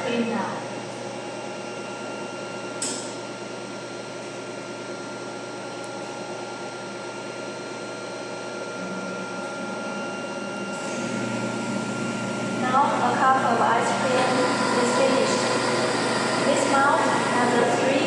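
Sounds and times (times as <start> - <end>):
machine whirring with whining tones: 5.4 - 18.0.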